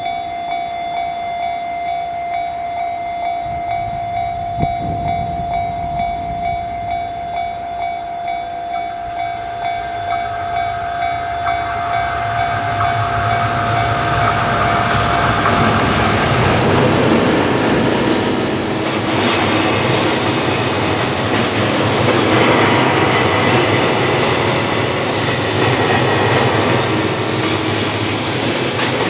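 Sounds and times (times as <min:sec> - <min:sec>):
level-crossing warning bell: 0:00.0 - 0:29.0
freight train rumbling: 0:03.4 - 0:29.0
high hiss: 0:09.2 - 0:29.0.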